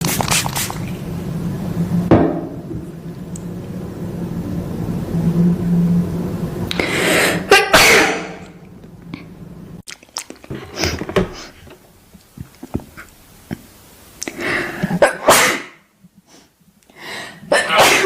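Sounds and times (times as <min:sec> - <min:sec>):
dull thump: 0:02.1 - 0:02.8
drawn-in breath: 0:06.7 - 0:07.5, 0:16.3 - 0:17.5
person sneezing: 0:07.2 - 0:08.4, 0:14.9 - 0:15.8, 0:17.5 - 0:18.0.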